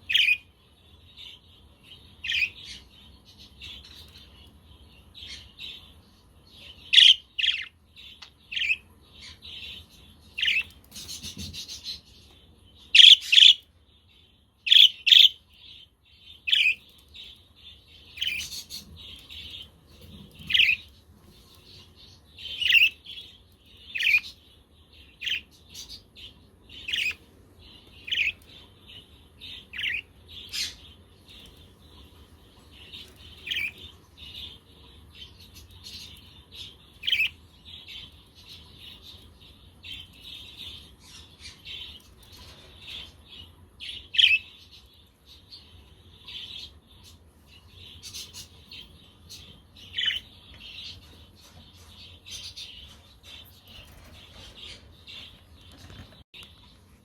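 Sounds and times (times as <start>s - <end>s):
budgerigars chirping: 0.1s - 0.5s, 2.2s - 2.8s, 6.8s - 9.8s, 12.9s - 13.6s, 14.7s - 15.4s, 16.4s - 16.8s, 18.1s - 19.7s, 20.4s - 20.9s, 22.4s - 23.3s, 23.9s - 24.4s, 25.2s - 27.2s, 28.0s - 31.7s, 32.7s - 34.6s, 35.4s - 39.2s, 43.8s - 44.5s, 47.9s - 51.0s.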